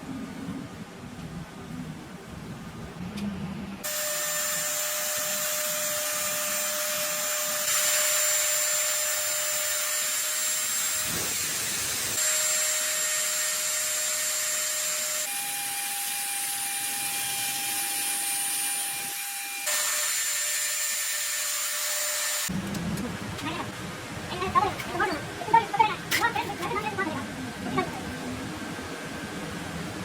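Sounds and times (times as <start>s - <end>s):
lathe cutting metal: 3.9s - 22.5s.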